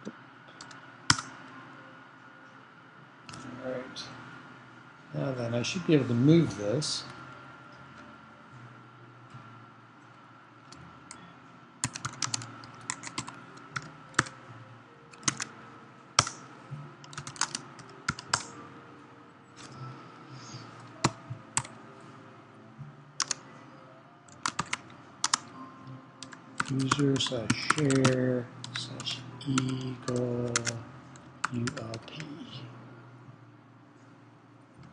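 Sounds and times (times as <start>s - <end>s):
faint steady hum: 0.0s - 34.9s
keyboard typing: 0.6s - 1.3s, 11.8s - 14.4s, 15.1s - 15.5s, 16.2s - 16.4s, 17.0s - 18.6s, 23.2s - 23.4s, 24.3s - 25.5s, 26.2s - 32.4s.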